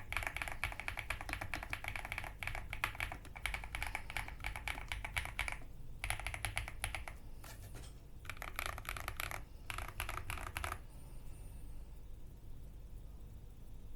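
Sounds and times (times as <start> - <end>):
mechanical keyboard typing: 0.0 - 7.2, 8.2 - 10.8.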